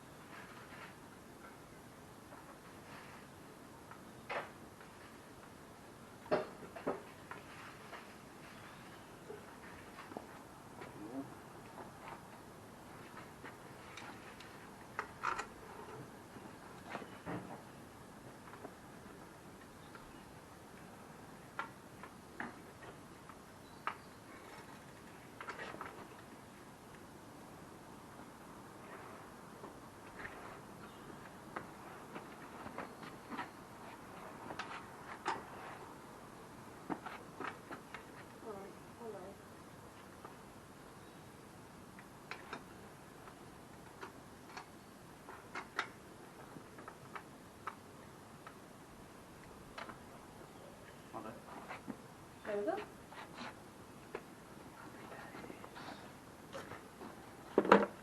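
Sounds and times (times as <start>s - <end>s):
tools and bike parts clicking: 15.0s - 15.5s.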